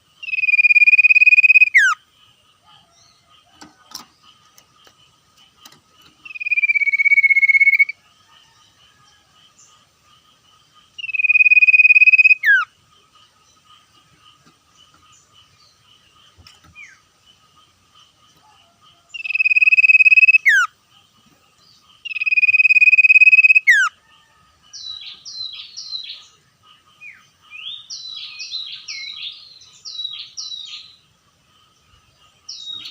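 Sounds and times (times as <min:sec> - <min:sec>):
faint steady high tone: 0:00.0 - 0:17.0, 0:18.0 - 0:29.7
bird whistling and chirping: 0:00.2 - 0:02.0, 0:06.2 - 0:08.0, 0:11.0 - 0:12.7, 0:19.2 - 0:20.7, 0:22.1 - 0:23.9.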